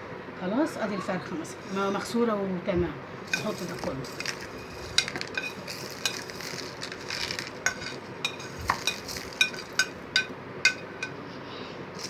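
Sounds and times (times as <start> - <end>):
clinks against a ringing dish: 7.3 - 11.2.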